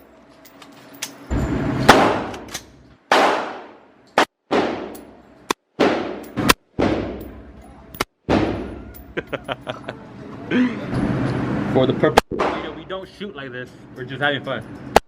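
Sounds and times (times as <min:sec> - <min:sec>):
loud gunshots echoing: 0:01.9 - 0:02.5, 0:03.1 - 0:04.9, 0:05.8 - 0:07.2, 0:08.2 - 0:08.9, 0:12.3 - 0:12.9.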